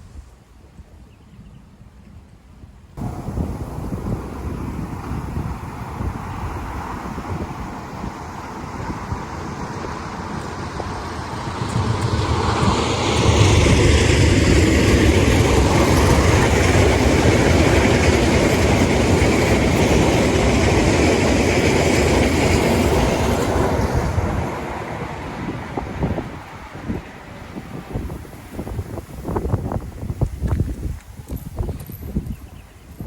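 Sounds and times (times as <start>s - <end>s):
train wheels clattering on rails: 3.0s - 27.1s.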